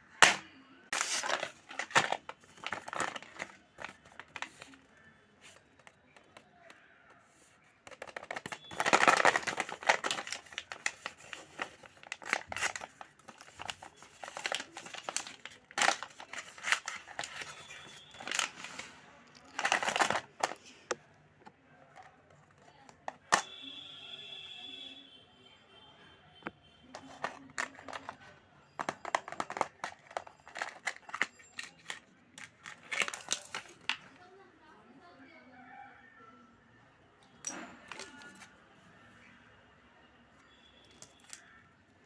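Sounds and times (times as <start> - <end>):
packaging crinkling: 0.9 - 5.9, 7.9 - 20.7, 28.8 - 34.0.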